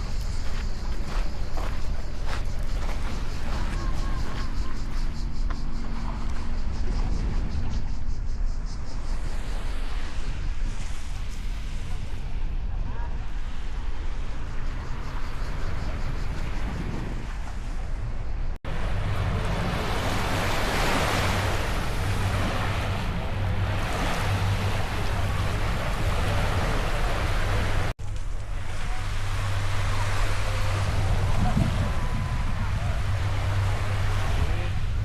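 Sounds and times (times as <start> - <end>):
wind on microphone: 0.0 - 35.0
steady low hum: 17.4 - 35.0
sea waves washing on shore: 18.7 - 35.0.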